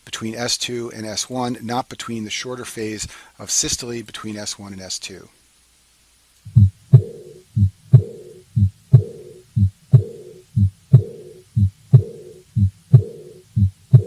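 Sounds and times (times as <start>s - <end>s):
heartbeat lub-dub: 6.5s - 14.0s
soft blowing heart murmur: 6.5s - 14.0s.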